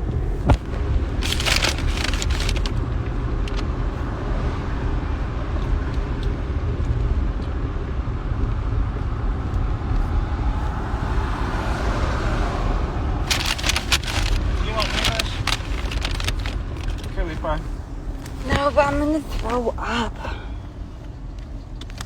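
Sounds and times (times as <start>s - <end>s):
truck engine and road rumble: 0.0s - 22.0s
rustling clatter: 0.2s - 2.9s, 13.2s - 19.8s.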